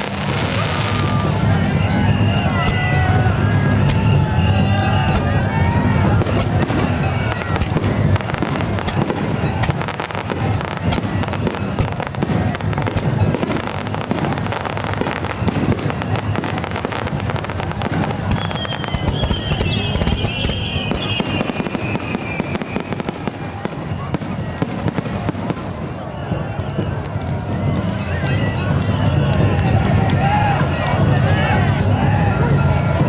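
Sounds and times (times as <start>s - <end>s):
fireworks crackling: 0.0s - 33.0s
high wavering whistle: 18.3s - 23.0s.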